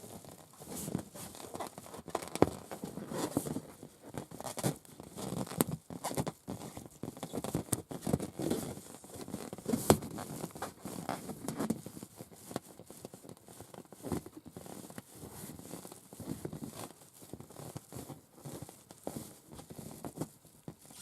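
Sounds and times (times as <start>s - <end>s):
nails scratching a balloon: 0.1s - 21.0s.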